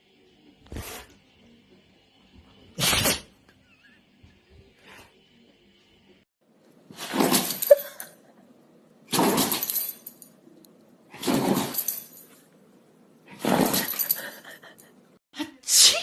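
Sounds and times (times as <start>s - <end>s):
dog sneezing: 2.8s - 3.4s.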